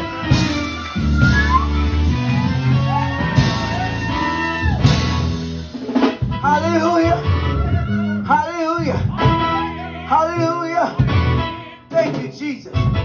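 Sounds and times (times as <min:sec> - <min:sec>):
heavy bass line: 0:00.0 - 0:10.2
live band playing chords: 0:00.0 - 0:13.0.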